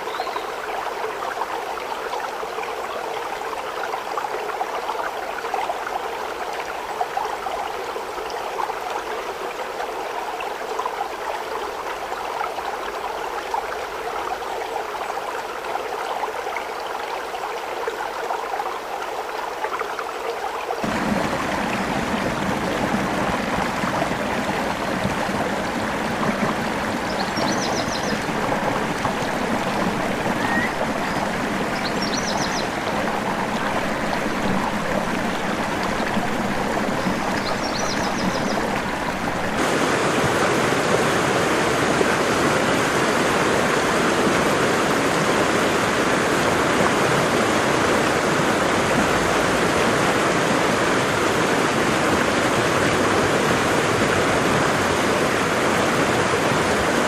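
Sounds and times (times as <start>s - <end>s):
waterfall rushing: 20.8s - 57.0s.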